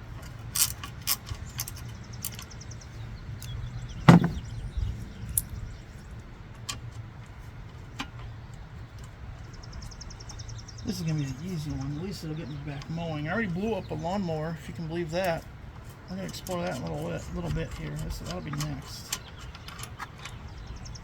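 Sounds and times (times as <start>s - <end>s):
hand tools and metal parts clinking: 0.2s - 2.5s, 4.1s - 4.4s, 16.2s - 20.5s
loud knock: 4.1s - 4.5s.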